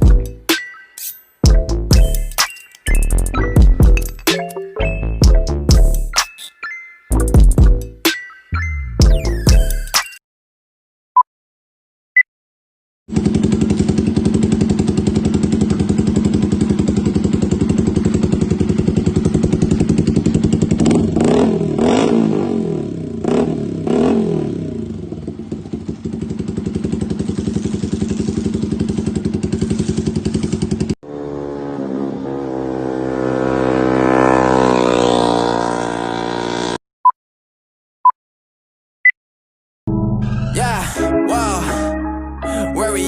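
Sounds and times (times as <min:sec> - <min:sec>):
motorcycle engine idling and revving: 0:00.0 - 0:00.5, 0:01.4 - 0:04.3, 0:13.1 - 0:36.8.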